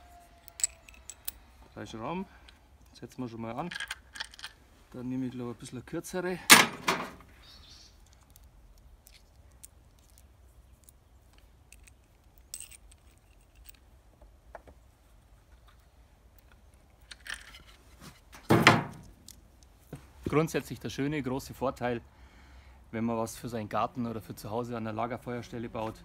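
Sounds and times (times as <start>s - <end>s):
metallic clinking of screws: 0.4s - 1.4s, 10.8s - 13.8s.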